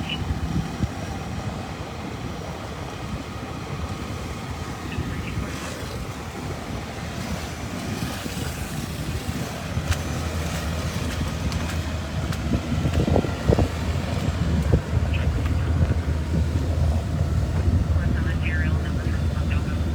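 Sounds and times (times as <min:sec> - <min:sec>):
low engine rumble: 0:00.0 - 0:19.9
wind buffeting microphone: 0:00.0 - 0:19.9.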